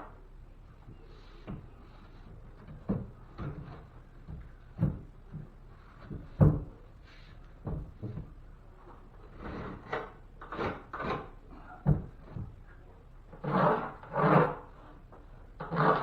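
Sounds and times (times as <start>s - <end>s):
scraping strokes on wood: 9.2s - 11.4s, 13.3s - 16.0s.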